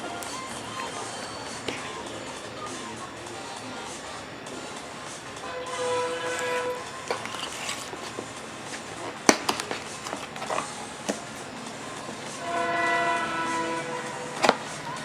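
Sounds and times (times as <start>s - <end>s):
sustained music chord: 5.4s - 7.0s, 12.4s - 15.0s
box being handled and opened: 5.6s - 11.5s.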